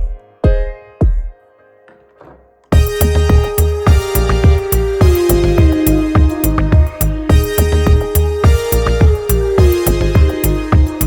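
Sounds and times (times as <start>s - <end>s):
electronic music with punchy beat: 2.7s - 11.0s.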